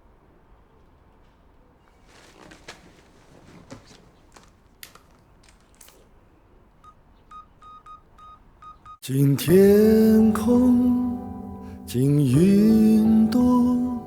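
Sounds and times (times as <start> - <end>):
faint rustling: 1.8 - 6.7
objects clicking: 3.6 - 6.2.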